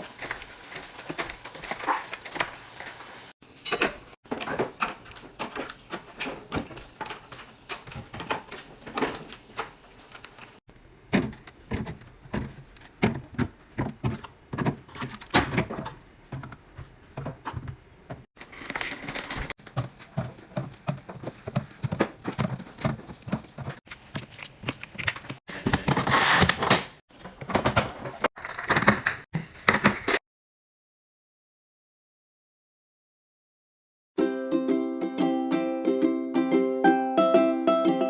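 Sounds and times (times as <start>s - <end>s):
plastic containers knocking and sliding: 10.4s - 30.2s.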